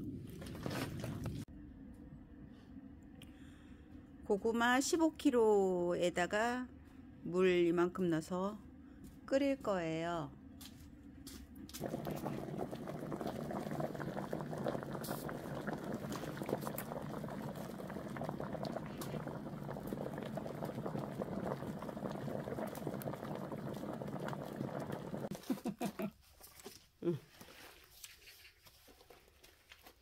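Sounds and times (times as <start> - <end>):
water boiling hard in pot: 11.7 - 25.4.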